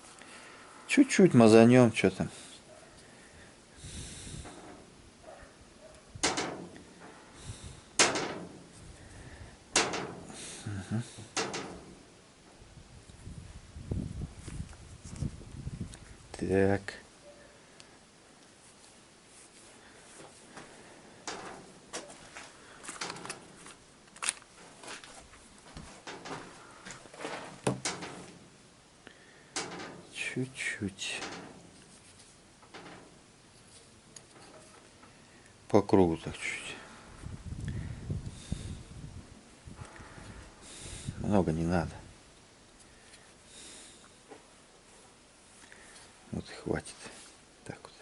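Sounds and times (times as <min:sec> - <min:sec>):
sharp knocks: 0:06.2 - 0:06.9, 0:08.0 - 0:08.7, 0:09.7 - 0:10.4, 0:11.3 - 0:12.0, 0:27.6 - 0:28.4
clicks and taps of handled parts: 0:11.3 - 0:11.8.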